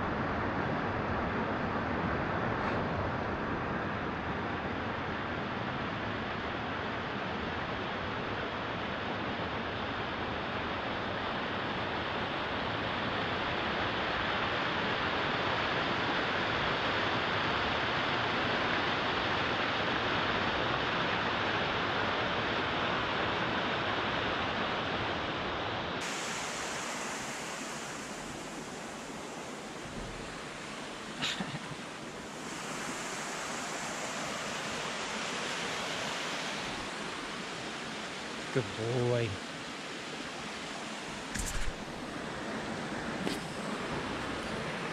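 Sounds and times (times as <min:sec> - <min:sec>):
flowing water: 0:26.0 - 0:44.9.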